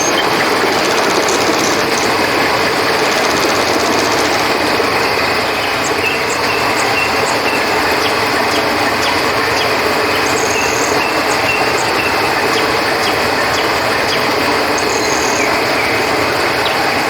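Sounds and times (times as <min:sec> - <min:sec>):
crickets chirping: 0:00.0 - 0:17.0.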